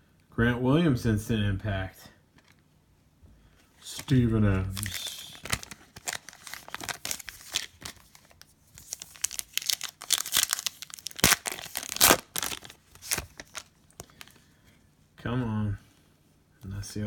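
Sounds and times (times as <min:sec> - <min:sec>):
plastic wrapper tearing and crinkling: 0:03.8 - 0:14.3.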